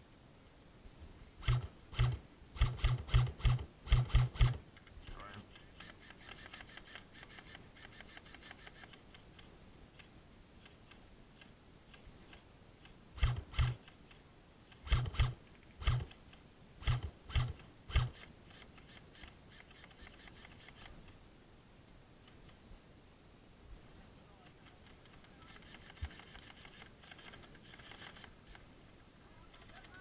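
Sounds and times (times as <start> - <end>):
faint steady ticking: 1.4 - 21.3, 22.2 - 22.8.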